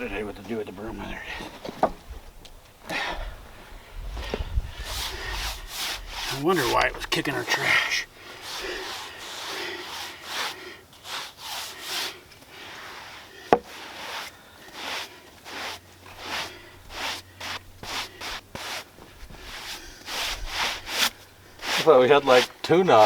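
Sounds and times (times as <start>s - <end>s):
broom sweeping sawdust: 4.7s - 23.0s.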